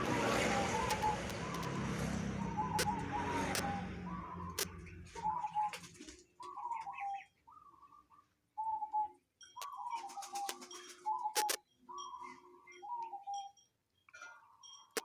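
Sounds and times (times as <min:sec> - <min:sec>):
dove cooing: 0:00.0 - 0:08.0.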